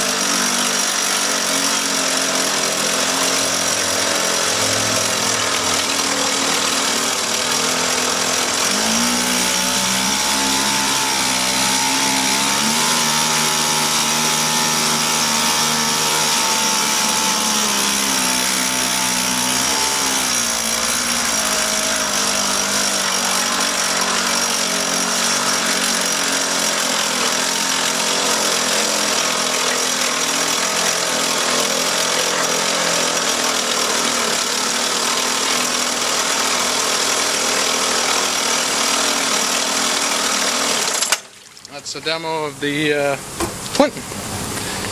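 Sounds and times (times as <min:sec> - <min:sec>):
outboard motor running: 0:00.0 - 0:44.9.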